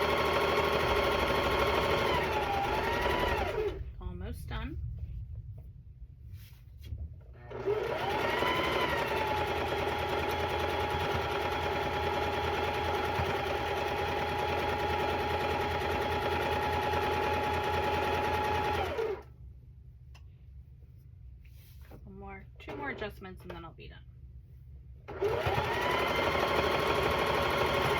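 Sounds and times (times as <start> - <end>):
sewing machine motor whining: 0.0 - 3.8, 7.4 - 19.3, 25.1 - 27.9.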